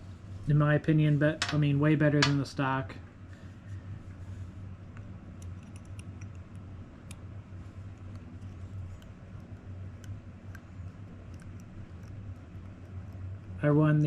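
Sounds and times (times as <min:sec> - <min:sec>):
steady low hum: 0:00.0 - 0:14.0
small parts and tools clicking: 0:05.4 - 0:07.2, 0:07.9 - 0:13.5.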